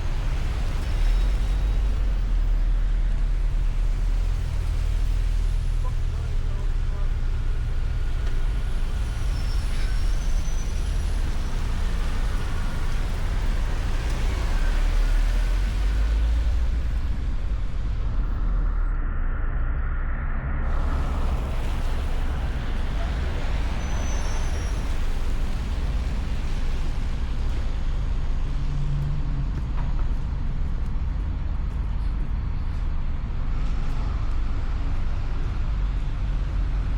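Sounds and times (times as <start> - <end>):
car engine and tyre rumble: 0.0 - 36.9.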